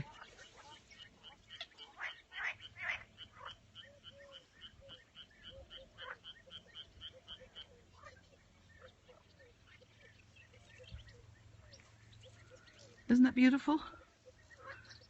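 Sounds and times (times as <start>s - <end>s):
frog croaks: 0.0s - 7.8s
frogs calling: 0.0s - 11.4s, 12.2s - 15.0s.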